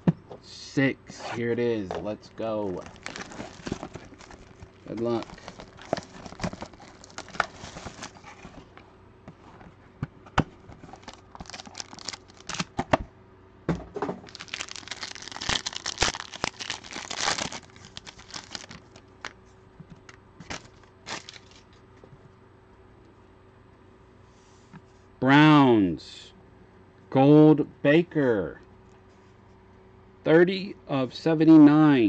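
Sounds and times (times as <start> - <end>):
plastic packaging tearing: 2.8 - 8.5, 10.8 - 12.8, 14.3 - 19.4, 20.4 - 21.8.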